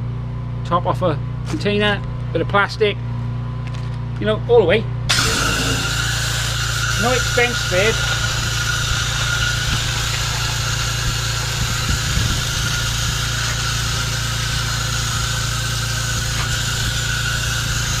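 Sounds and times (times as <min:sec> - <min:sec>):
engine idling: 0:05.1 - 0:18.0.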